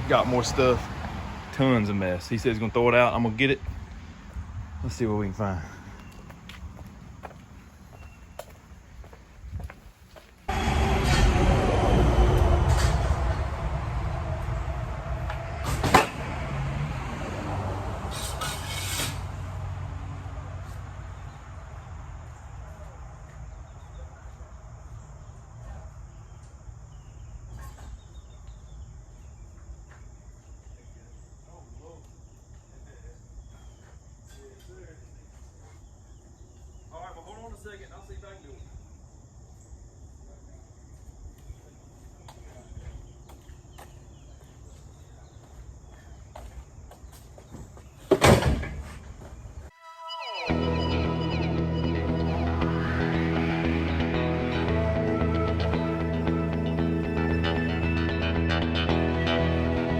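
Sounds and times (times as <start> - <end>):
low rumble: 10.5 - 17.1
loud scrap clatter: 18.1 - 19.4
insects chirring: 21.0 - 48.1.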